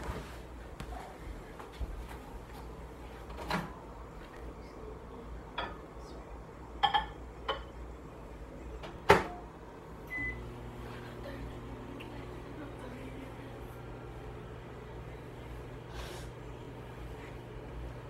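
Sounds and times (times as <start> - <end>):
microwave keypad beep: 10.1 - 10.5.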